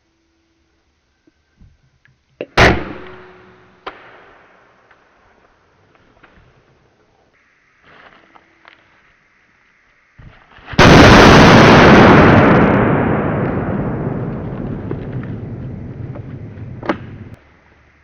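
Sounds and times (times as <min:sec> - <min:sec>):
slowed rifle shot boom: 0:02.6 - 0:04.6, 0:10.8 - 0:17.4.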